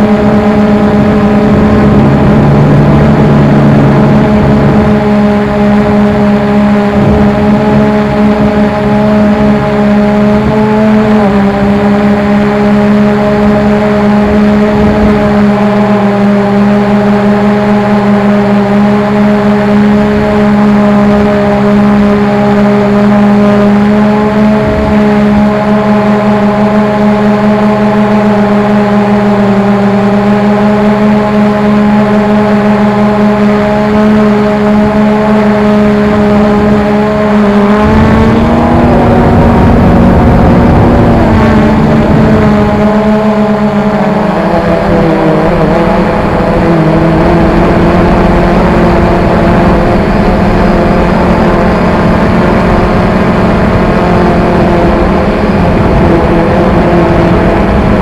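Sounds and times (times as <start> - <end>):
low rushing noise: 0.0 - 16.4, 33.8 - 58.0
quadcopter hovering hum: 0.0 - 58.0.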